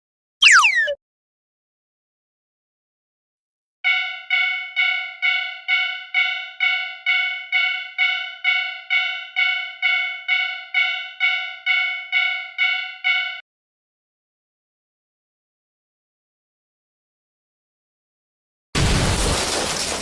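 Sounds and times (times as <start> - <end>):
railroad crossing bell ringing: 3.9 - 13.4.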